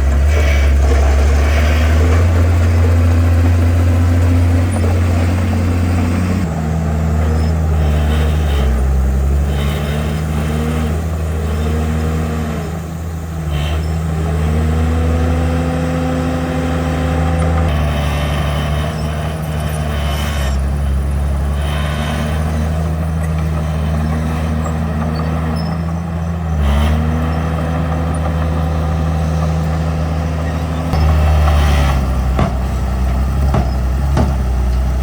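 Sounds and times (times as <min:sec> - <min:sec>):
bulldozer diesel engine running: 0:00.0 - 0:35.0.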